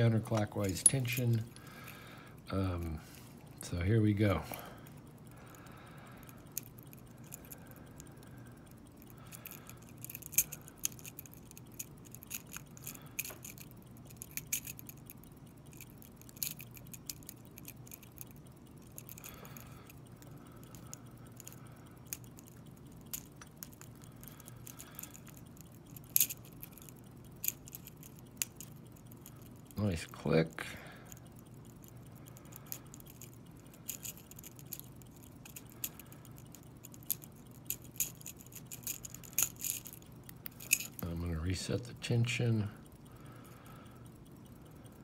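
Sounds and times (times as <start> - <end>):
low steady hum: 0.0 - 45.0
lock pick metallic clicks: 8.6 - 30.2, 31.1 - 41.1.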